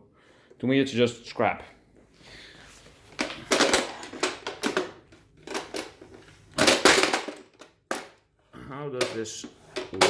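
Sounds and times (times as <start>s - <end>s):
hard items clattering: 2.8s - 8.2s, 9.0s - 10.0s.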